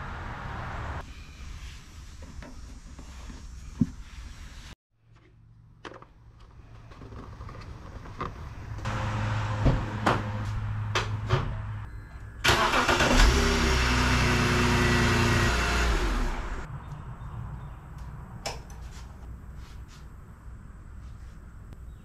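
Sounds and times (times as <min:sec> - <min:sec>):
car engine starting and running: 0:07.6 - 0:16.7.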